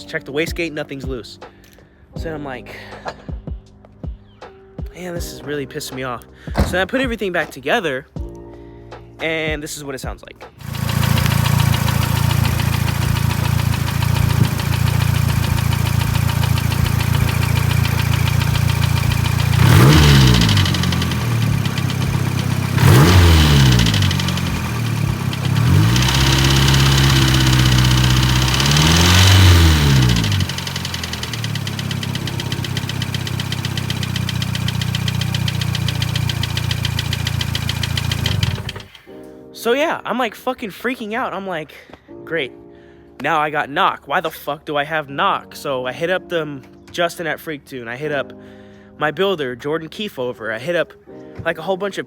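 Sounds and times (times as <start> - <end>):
car engine idling and revving: 10.6 - 39.0.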